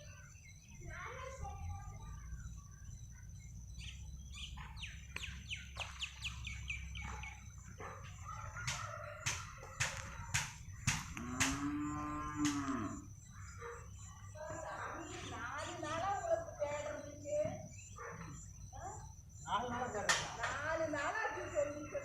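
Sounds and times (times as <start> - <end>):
birds chirping: 0.0 - 22.0
sharp loud bird calls: 0.0 - 22.0
cow mooing: 11.1 - 13.1.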